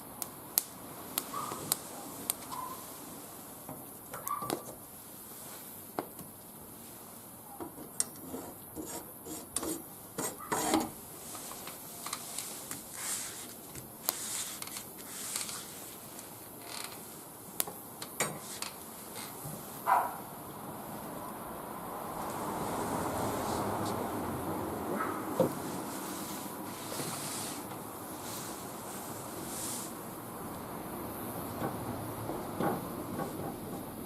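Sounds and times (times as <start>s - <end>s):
wood fire crackling: 0.1s - 7.2s, 10.4s - 19.2s
burning sticks scraping: 0.6s - 5.8s, 7.7s - 17.3s, 18.3s - 19.4s, 25.2s - 30.0s.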